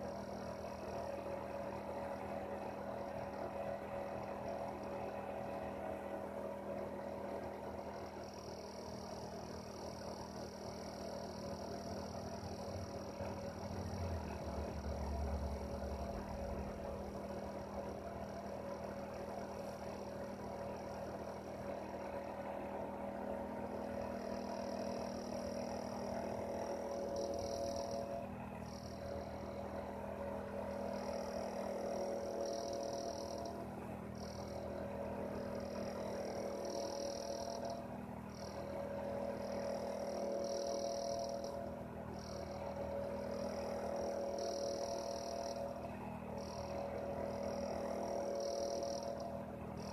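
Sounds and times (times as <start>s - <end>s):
heater humming: 0.0s - 49.9s.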